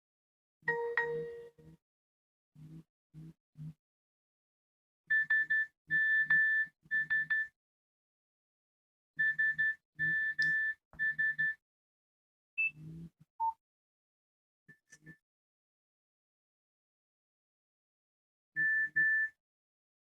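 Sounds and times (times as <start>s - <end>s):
phone ringtone beeping: 0.7s - 1.6s.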